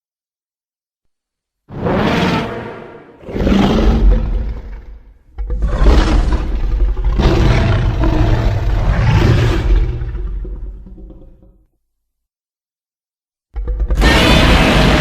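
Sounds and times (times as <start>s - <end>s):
monster roar: 1.7s - 11.0s, 13.7s - 15.0s.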